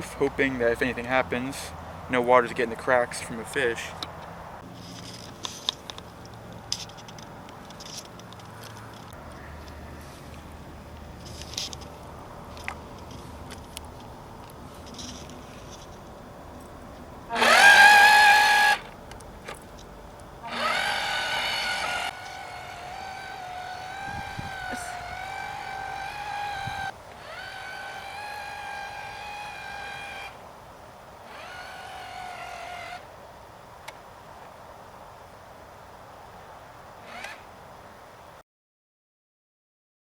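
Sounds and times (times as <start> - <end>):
small electric motor whining: 17.3 - 18.9, 20.4 - 30.4, 31.2 - 33.1, 37.0 - 37.5.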